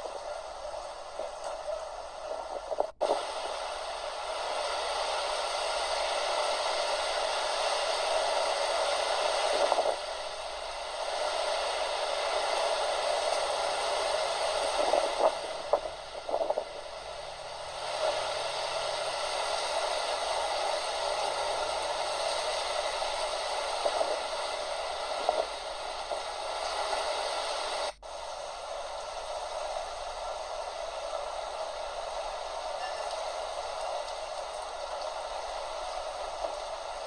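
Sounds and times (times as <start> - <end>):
heavy rain falling: 28.8 - 37.0.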